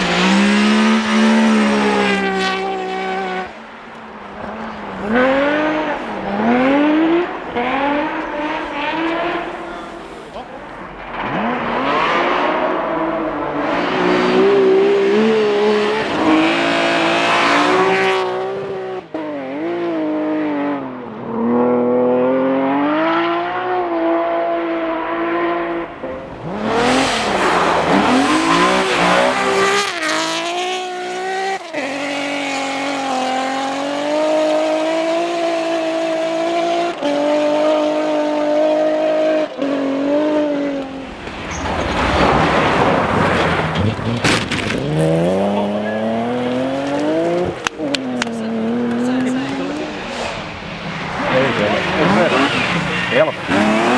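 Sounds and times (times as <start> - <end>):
rally car engine revving: 0.0 - 53.9
tyre squeal: 40.7 - 47.6.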